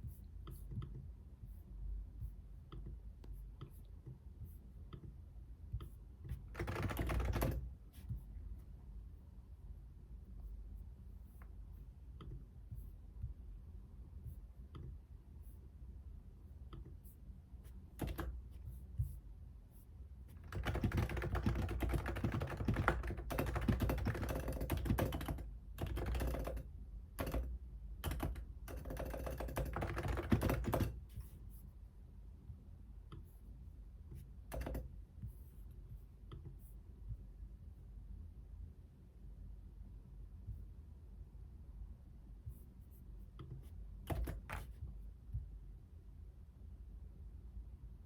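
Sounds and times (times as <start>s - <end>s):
computer keyboard typing: 5.8s - 7.7s, 18.0s - 18.4s, 20.3s - 31.0s, 34.5s - 34.9s, 44.1s - 44.8s.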